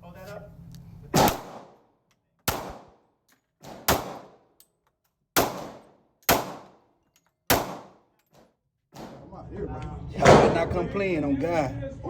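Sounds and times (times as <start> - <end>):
gunshots: 1.1 - 1.8, 2.5 - 3.0, 3.6 - 4.4, 5.4 - 6.8, 7.5 - 8.0, 10.2 - 10.9.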